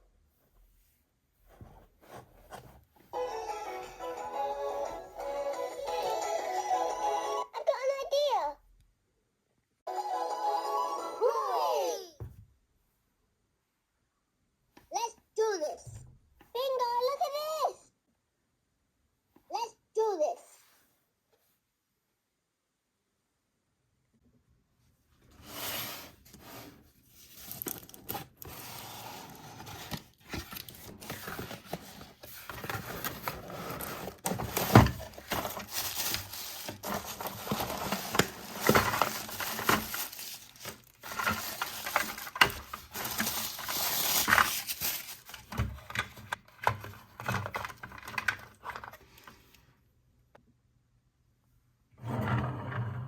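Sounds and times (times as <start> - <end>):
packaging crinkling and tearing: 29.6 - 46.0.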